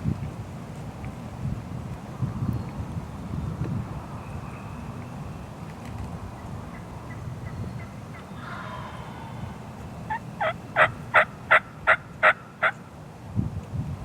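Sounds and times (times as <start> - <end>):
turkey hen yelping: 6.4 - 12.8.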